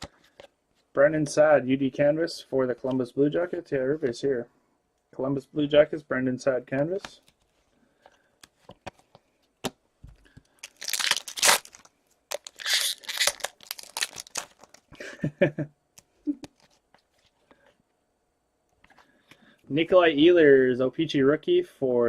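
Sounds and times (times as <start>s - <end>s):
wrapper tearing and crinkling: 10.6s - 14.9s.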